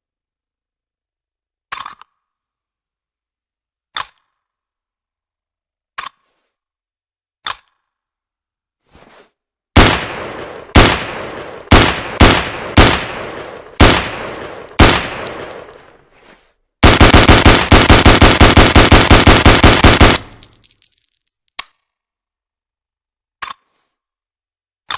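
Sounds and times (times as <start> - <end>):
rapid string of rifle shots: 9.8 - 15.9, 16.8 - 20.6
rifle shots echoing: 9.8 - 15.9, 16.8 - 20.7.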